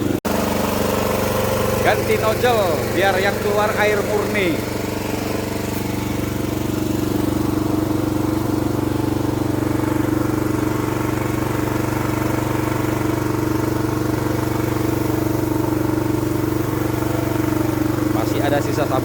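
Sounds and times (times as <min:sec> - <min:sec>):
pressure washer engine running: 0:00.0 - 0:19.0.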